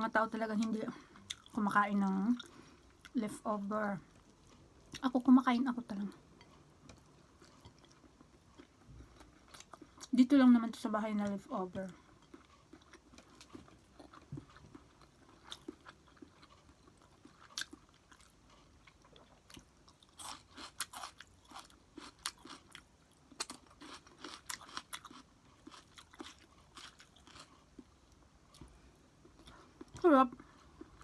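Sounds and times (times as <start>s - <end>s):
close-up chewing of rice: 6.2s - 10.1s, 11.9s - 31.0s.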